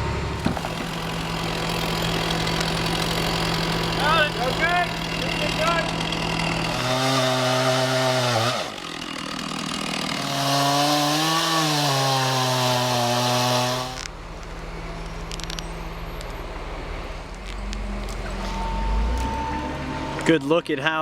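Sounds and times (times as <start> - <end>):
chainsaw cutting wood: 0.4 - 14.2.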